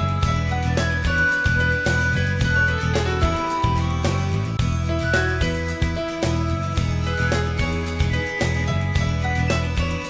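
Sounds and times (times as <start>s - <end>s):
instrumental music with beat: 0.0s - 10.0s.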